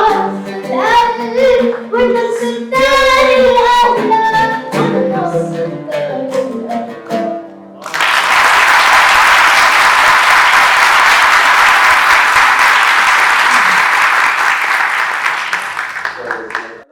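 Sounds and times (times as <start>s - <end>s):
instrumental music: 0.0s - 7.9s
crowd applause: 7.8s - 16.9s.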